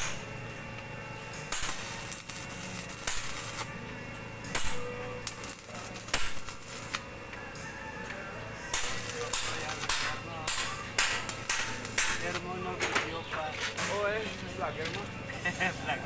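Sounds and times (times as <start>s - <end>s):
metal clanging: 0.0s - 7.0s, 8.0s - 15.7s
steady low hum: 0.0s - 16.0s.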